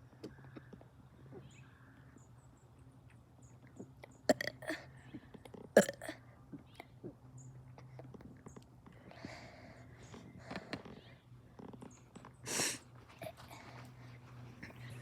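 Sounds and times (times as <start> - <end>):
faint low hum: 0.0 - 15.0
person burp-like gulps: 4.3 - 7.2.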